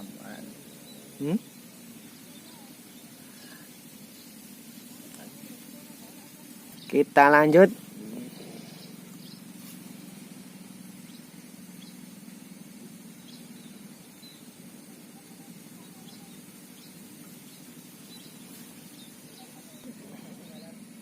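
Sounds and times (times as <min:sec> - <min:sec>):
steady low hum: 0:00.0 - 0:21.0
faint high-pitched chirps: 0:10.3 - 0:21.0.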